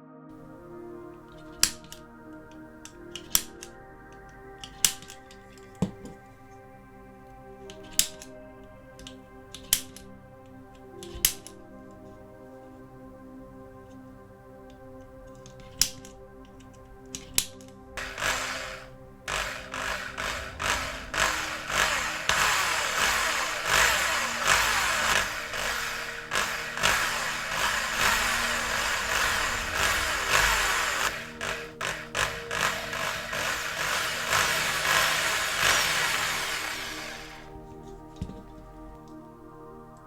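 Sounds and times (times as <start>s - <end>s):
background music: 0.0s - 40.0s
power drill drilling: 18.0s - 37.6s.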